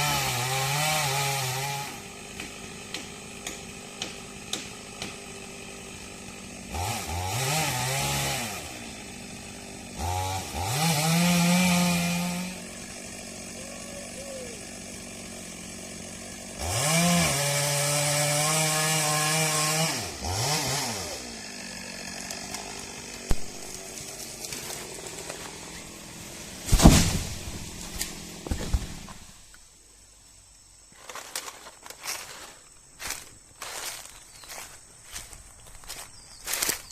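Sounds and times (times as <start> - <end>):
chainsaw revving: 0.0 - 29.2
chainsaw idling: 0.0 - 29.4.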